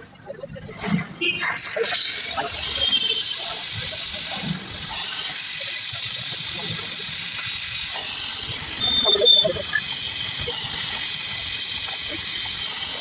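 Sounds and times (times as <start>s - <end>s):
welding torch flame hissing: 1.8s - 13.0s.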